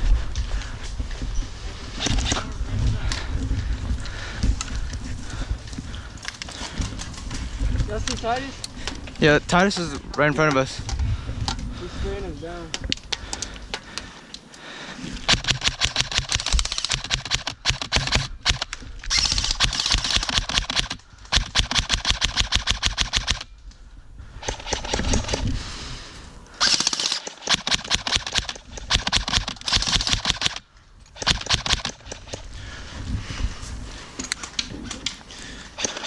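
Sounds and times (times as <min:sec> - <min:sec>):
airsoft guns firing bursts: 0:15.3 - 0:18.6, 0:19.2 - 0:23.5, 0:26.6 - 0:30.6, 0:31.2 - 0:32.4.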